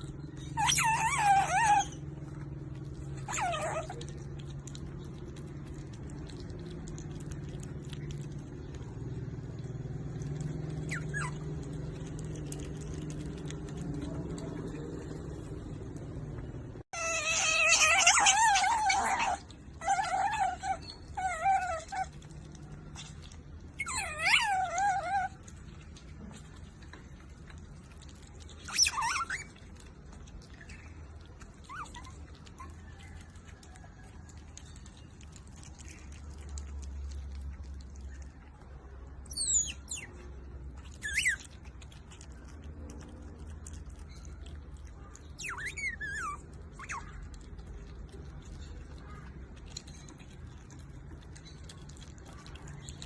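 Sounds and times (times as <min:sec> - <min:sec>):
otter squeaky calls: 0:00.0 - 0:02.4, 0:16.9 - 0:22.2, 0:28.4 - 0:33.2, 0:39.2 - 0:41.7, 0:45.0 - 0:47.3.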